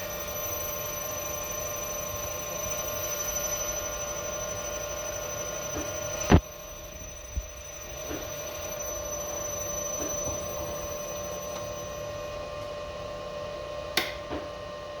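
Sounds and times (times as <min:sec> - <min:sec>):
electrical hum with whine: 0:00.0 - 0:15.0
sharp click: 0:14.0 - 0:14.4.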